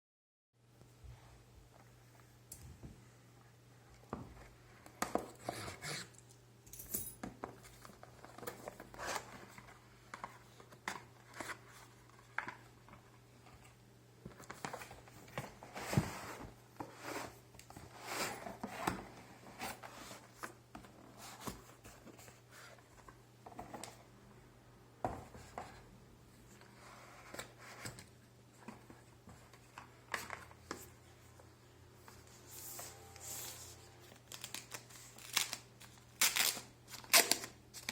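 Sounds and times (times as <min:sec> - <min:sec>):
cardboard packaging rustling and tearing: 0:32.8 - 0:37.9.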